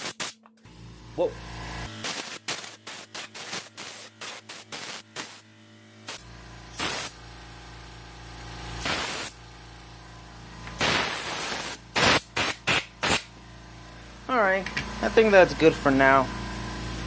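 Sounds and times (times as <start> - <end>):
air compressor motor running: 0.0 - 17.0
air blow gun hissing: 2.0 - 5.4, 6.1 - 7.2, 8.8 - 9.4, 10.8 - 13.3.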